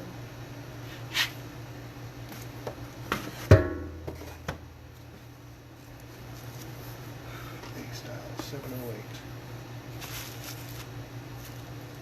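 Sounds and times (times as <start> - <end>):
loud metal knock ringing: 3.5 - 4.1.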